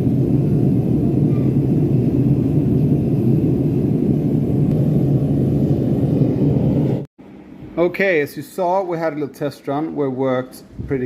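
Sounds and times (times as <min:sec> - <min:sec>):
gas burner flame rushing: 0:00.0 - 0:07.1.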